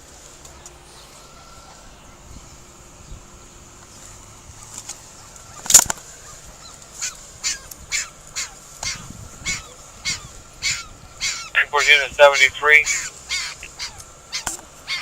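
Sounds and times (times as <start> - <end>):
puppy yelping: 6.2 - 11.5, 12.8 - 15.0.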